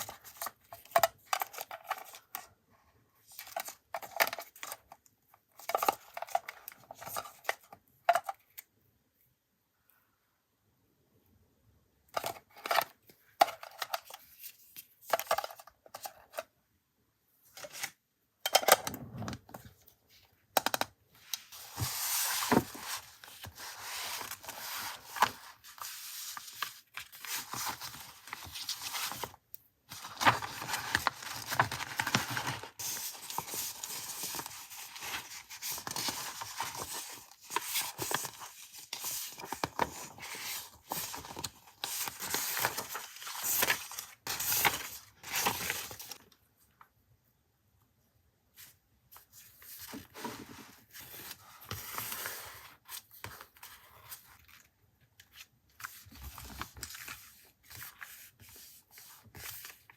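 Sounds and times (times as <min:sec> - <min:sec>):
paper rustling and crinkling: 0:21.2 - 0:46.2, 0:48.6 - 0:59.9.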